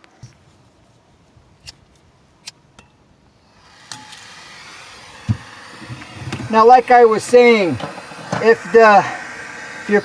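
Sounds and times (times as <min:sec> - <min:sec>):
soldering torch hissing: 0:03.7 - 0:10.0.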